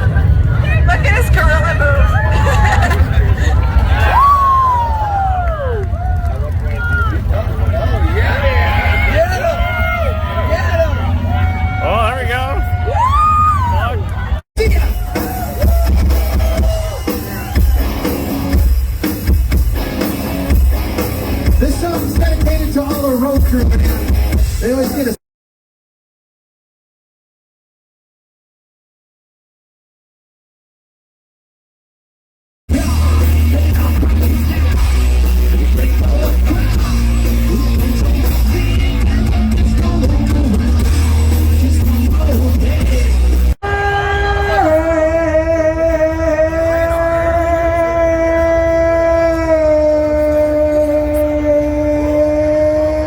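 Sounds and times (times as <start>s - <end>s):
heavy pulsing bass: 0.0s - 25.1s, 32.7s - 53.0s
drums: 0.0s - 25.2s, 32.7s - 44.8s
distorted guitar: 14.6s - 25.2s, 32.7s - 45.9s
live rock band: 14.6s - 25.2s, 32.7s - 44.8s.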